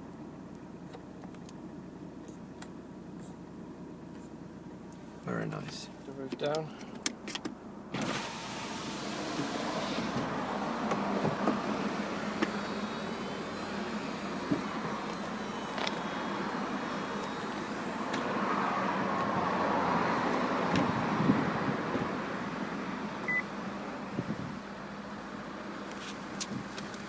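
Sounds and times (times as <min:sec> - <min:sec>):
motor hum: 0:08.6 - 0:18.4
short beep: 0:23.3 - 0:23.5.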